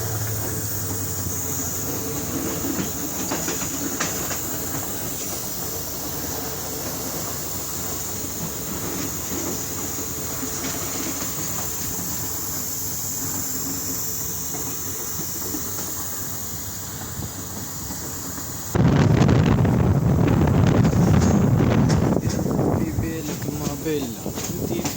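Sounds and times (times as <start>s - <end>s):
moving vehicle noise: 0.0s - 24.9s
wind buffeting microphone: 18.6s - 24.9s.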